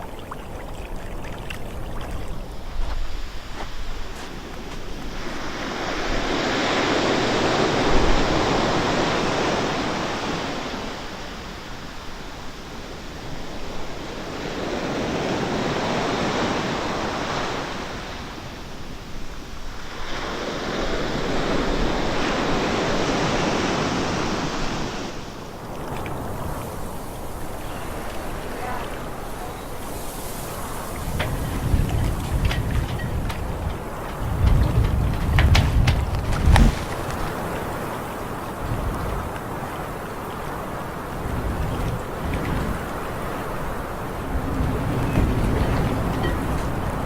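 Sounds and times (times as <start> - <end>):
whoosh sound effect: 36.2 - 37.3.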